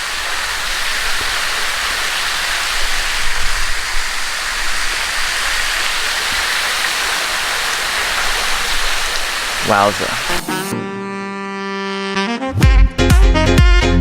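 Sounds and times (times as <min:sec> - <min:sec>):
waterfall splashing into pool: 0:00.0 - 0:10.5.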